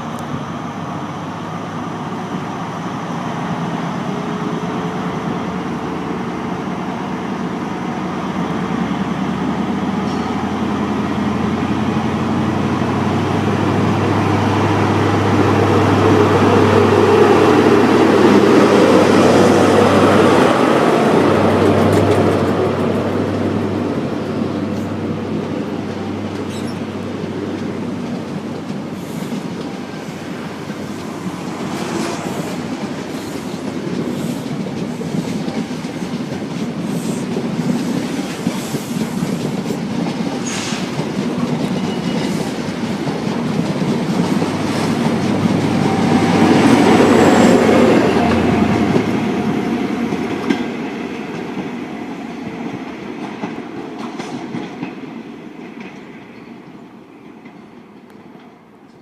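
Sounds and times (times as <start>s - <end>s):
train wheels clicking over rail joints: 24.0s - 59.0s.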